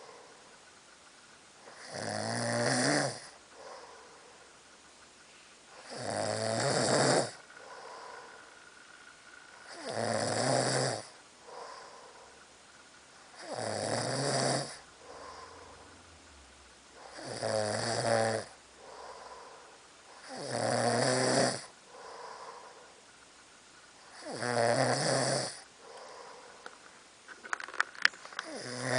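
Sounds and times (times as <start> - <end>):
soft breathing: 0.0 - 1.0, 3.3 - 5.9, 7.3 - 9.7, 11.1 - 13.4, 14.8 - 16.3, 18.6 - 20.3, 21.6 - 24.2, 25.6 - 27.1
person snoring: 1.7 - 4.1, 5.8 - 8.4, 9.7 - 12.2, 13.4 - 15.8, 17.0 - 22.8, 24.1 - 26.5, 28.4 - 28.9.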